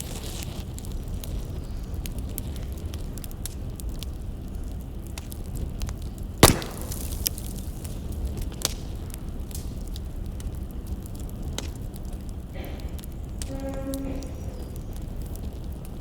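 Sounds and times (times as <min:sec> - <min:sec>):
fire low rumble: 0:00.0 - 0:16.0
firewood crackling: 0:00.0 - 0:16.0
loud pop from fire: 0:05.2 - 0:13.5.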